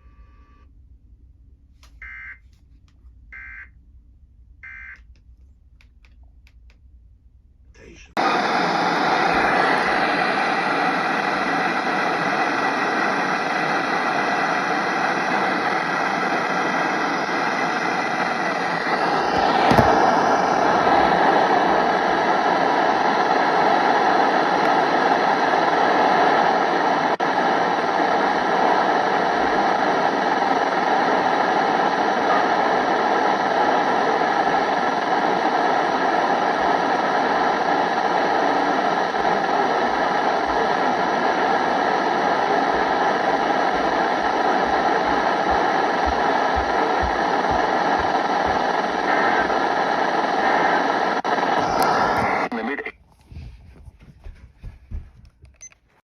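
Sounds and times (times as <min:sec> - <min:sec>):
faint steady tones: 0:00.0 - 0:00.8
loud rushing noise: 0:38.9 - 0:52.5.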